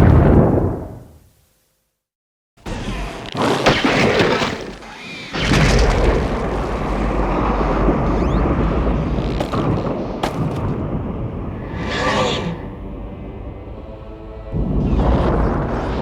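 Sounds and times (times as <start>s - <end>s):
crashing breaking impacts: 2.7s - 7.5s, 9.4s - 10.8s
heavy low rumble: 6.0s - 16.0s.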